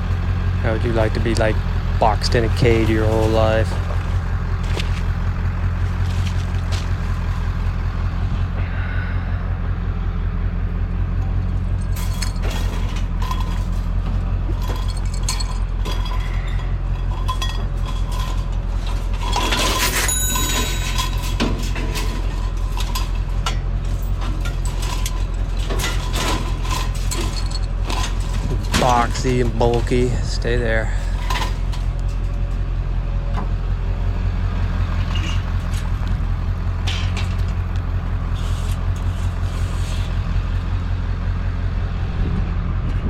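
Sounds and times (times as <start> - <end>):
vehicle engine idling: 0.0 - 43.0
scrap metal clinking and rattling: 11.2 - 32.8, 35.0 - 36.0, 36.7 - 40.2
ringing metallic strike: 20.0 - 21.0.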